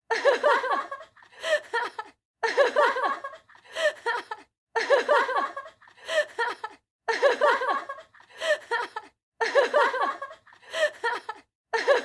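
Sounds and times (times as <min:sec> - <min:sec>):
person giggling: 0:00.8 - 0:12.0.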